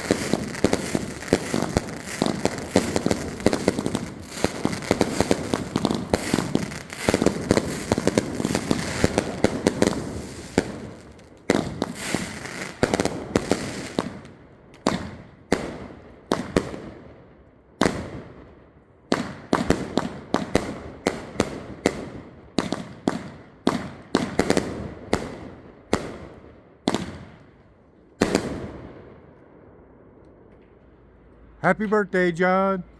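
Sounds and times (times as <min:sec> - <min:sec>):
sharp firework bangs: 0:00.0 - 0:16.9, 0:19.2 - 0:27.4
fireworks crackling and banging: 0:00.0 - 0:17.1, 0:19.1 - 0:27.6, 0:28.2 - 0:29.4.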